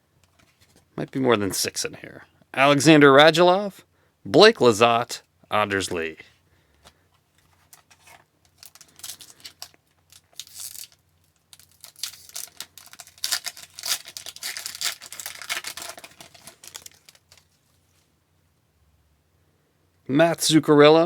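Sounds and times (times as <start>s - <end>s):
wrapper tearing and crinkling: 7.7s - 17.6s.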